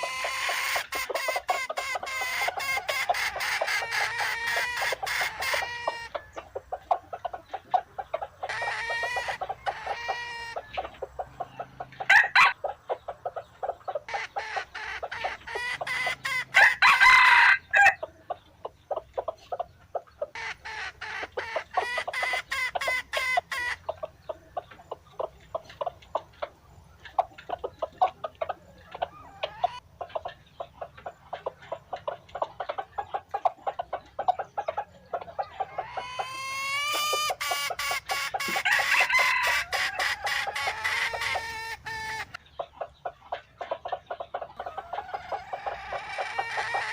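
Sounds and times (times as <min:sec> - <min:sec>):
roosters crowing: 0:00.0 - 0:07.1, 0:08.0 - 0:12.9, 0:13.6 - 0:18.1, 0:20.2 - 0:24.0, 0:28.8 - 0:29.8, 0:35.2 - 0:42.4, 0:44.4 - 0:46.9
chickens clucking rapidly: 0:00.0 - 0:46.9.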